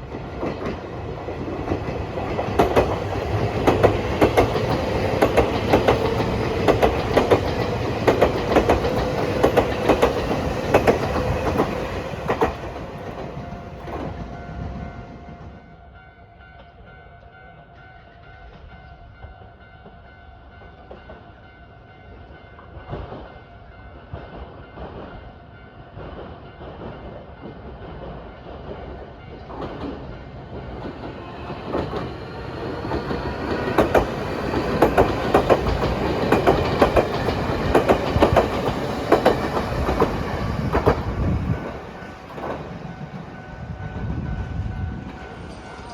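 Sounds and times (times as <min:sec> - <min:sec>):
train wheels clacking on rail joints: 0:00.0 - 0:15.5, 0:25.9 - 0:43.6
electric train passing: 0:00.0 - 0:45.9.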